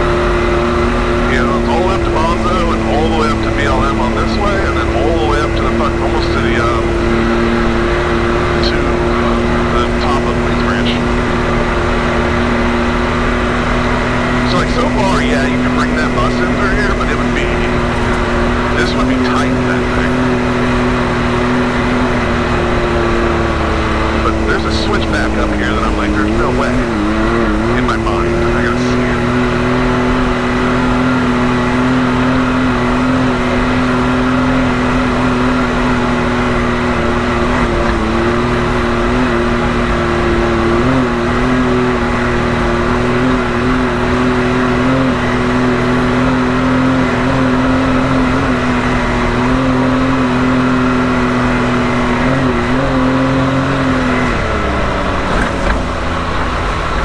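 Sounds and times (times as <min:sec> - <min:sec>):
off-road vehicle engine running: 0:00.0 - 0:57.0.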